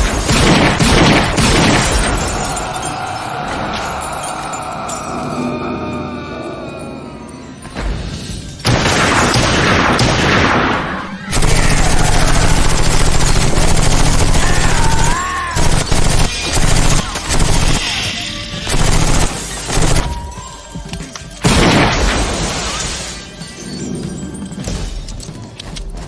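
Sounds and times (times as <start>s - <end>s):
automatic gunfire: 0.0s - 2.2s, 8.7s - 17.8s.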